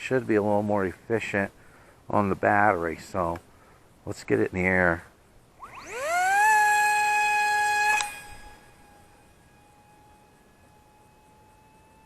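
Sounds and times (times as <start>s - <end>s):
high-pitched motor whine: 5.5s - 12.0s.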